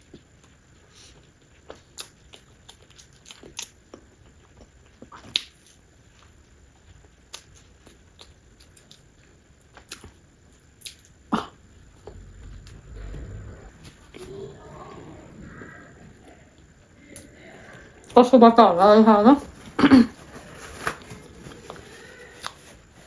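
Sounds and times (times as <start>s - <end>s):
chewing soft cake: 0.0s - 18.2s, 19.5s - 23.0s.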